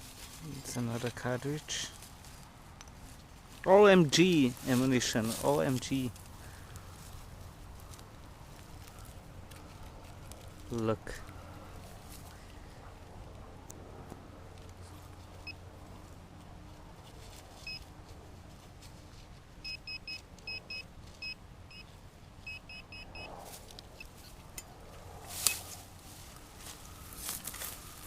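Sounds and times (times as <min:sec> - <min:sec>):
metal detector chirping: 0:19.6 - 0:24.3.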